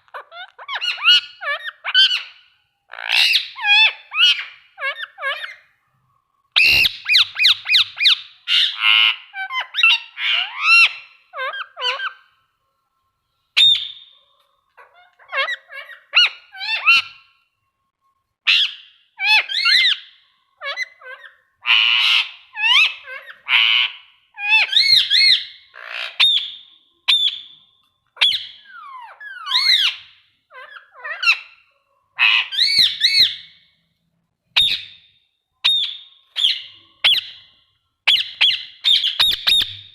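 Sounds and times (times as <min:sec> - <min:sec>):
parakeet squawking and whistling: 0:00.0 - 0:05.6, 0:06.5 - 0:12.3, 0:13.6 - 0:17.4, 0:18.5 - 0:33.6, 0:34.5 - 0:39.9.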